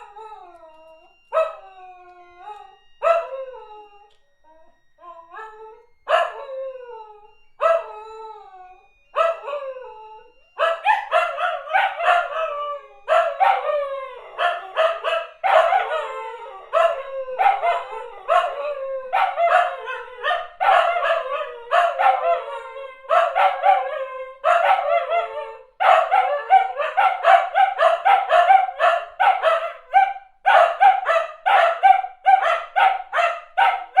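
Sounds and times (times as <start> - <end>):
dog howling and yipping: 9.2 - 34.0.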